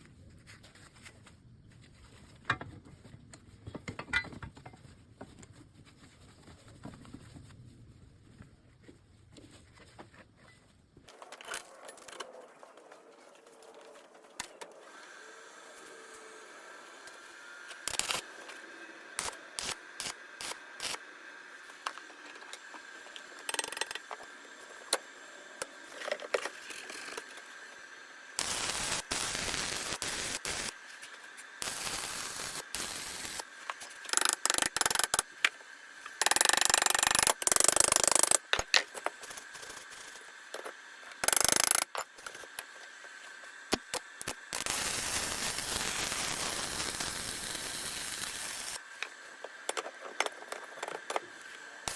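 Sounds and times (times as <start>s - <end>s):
loud mechanical noise: 14.7s - 42.9s, 43.7s - 51.9s.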